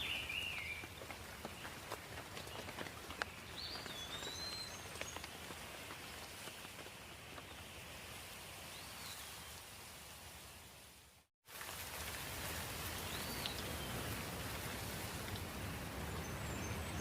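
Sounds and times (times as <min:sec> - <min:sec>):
light rain falling: 0:00.0 - 0:17.0
raindrops clicking close by: 0:00.3 - 0:07.8, 0:11.5 - 0:17.0.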